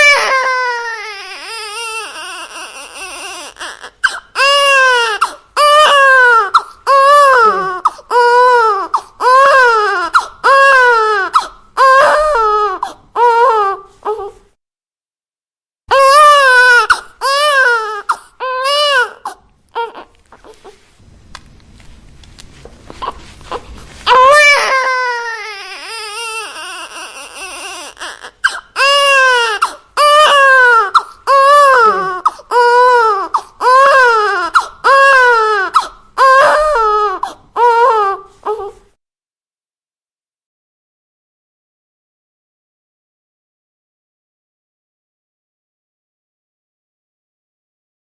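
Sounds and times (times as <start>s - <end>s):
baby crying: 0.0s - 14.4s, 15.9s - 20.8s, 23.0s - 38.8s.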